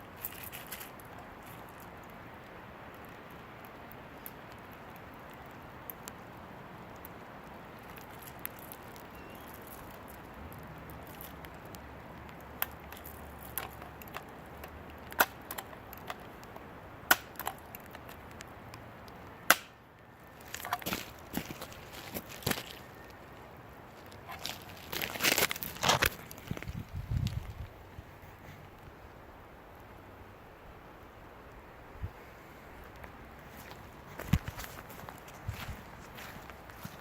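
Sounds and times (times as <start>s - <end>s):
rustling: 0.0s - 2.0s, 20.2s - 29.2s, 32.0s - 37.0s
steady outdoor hiss: 0.0s - 37.0s.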